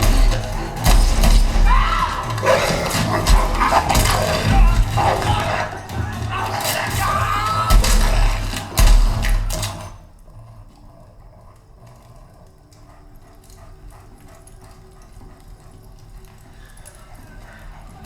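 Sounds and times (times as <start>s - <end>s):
deep bass hits: 0.0s - 6.4s
action movie soundtrack: 0.0s - 18.0s.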